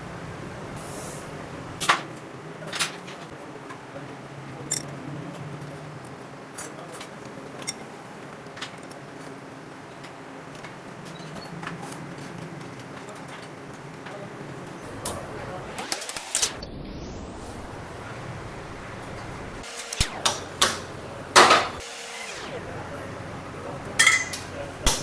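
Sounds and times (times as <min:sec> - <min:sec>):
steady low hum: 0:14.4 - 0:25.0.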